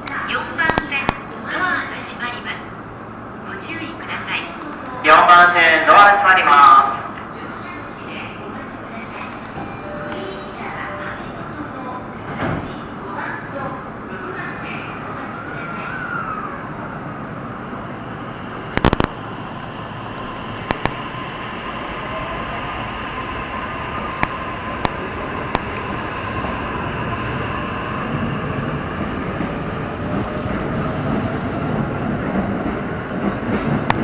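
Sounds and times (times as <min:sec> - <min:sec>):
train wheels rumbling: 0:00.0 - 0:34.0
train traction motor whine: 0:07.1 - 0:13.1, 0:13.9 - 0:32.0
sharp clicks: 0:18.7 - 0:19.2.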